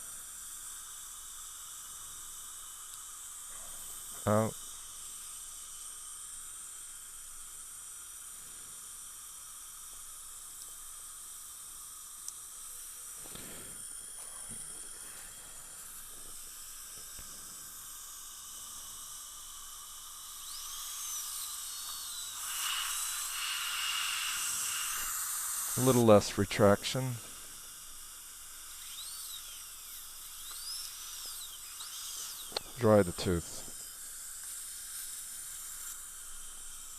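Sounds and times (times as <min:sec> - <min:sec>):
dental suction hiss: 0:00.0 - 0:36.9
high thin whine: 0:01.9 - 0:05.8, 0:12.4 - 0:36.9.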